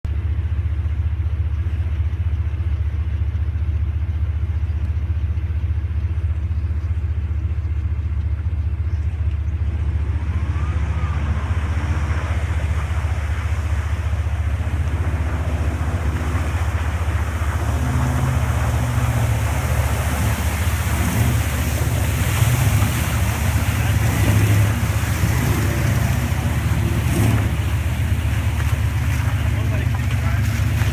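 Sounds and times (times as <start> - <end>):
pickup engine revving: 9.5 - 30.9.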